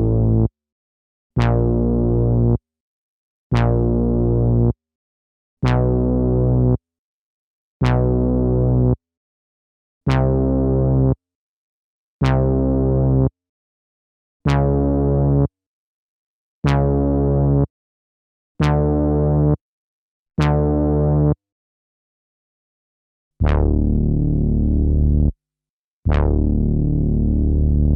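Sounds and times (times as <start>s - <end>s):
sampled synthesizer notes: 23.4s - 25.3s, 26.1s - 27.9s.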